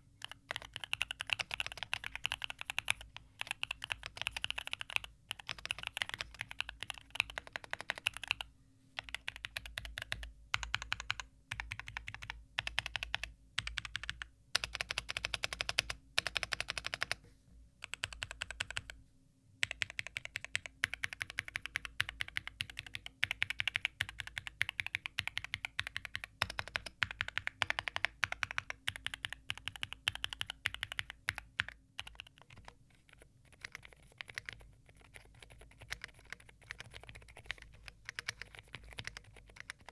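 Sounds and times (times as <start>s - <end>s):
mechanical keyboard typing: 0.2s - 17.2s, 17.8s - 19.0s, 19.6s - 39.9s.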